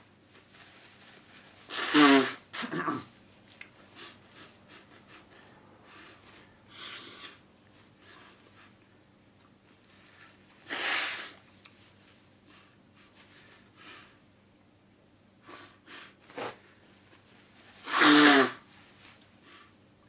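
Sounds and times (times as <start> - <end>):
person sniffing: 1.7 - 2.7, 6.0 - 7.4, 10.7 - 11.4, 17.8 - 18.7
person sneezing: 1.7 - 3.1, 17.8 - 18.6.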